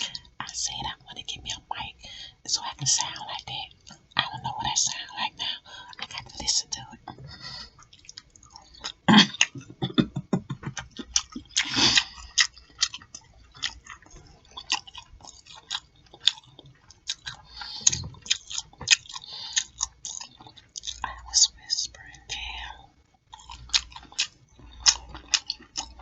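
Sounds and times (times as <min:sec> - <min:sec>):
chewing and lip smacking: 0:07.6 - 0:09.8, 0:10.6 - 0:22.5, 0:23.3 - 0:26.0.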